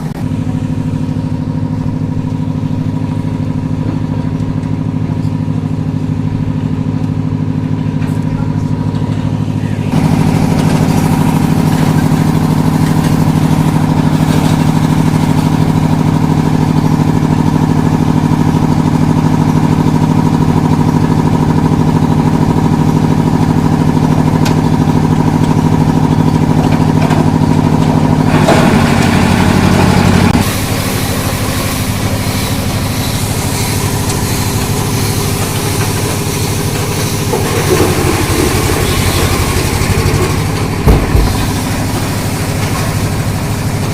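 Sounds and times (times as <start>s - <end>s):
engine running steadily: 0.0s - 43.9s
rough grinding noise: 8.8s - 18.5s, 23.4s - 43.9s.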